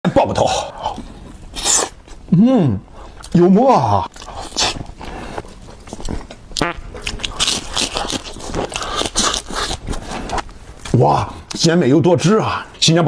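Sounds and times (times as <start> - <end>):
person chewing with wet smacking: 4.0 - 10.9.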